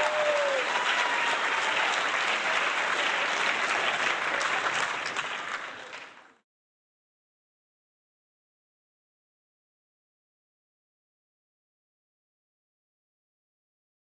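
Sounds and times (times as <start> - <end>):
crowd applauding: 0.0 - 6.4.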